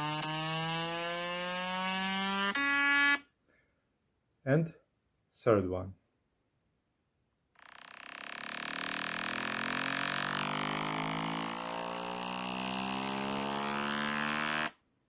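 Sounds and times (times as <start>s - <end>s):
phone speaker buzzing tone: 2.4s - 3.2s.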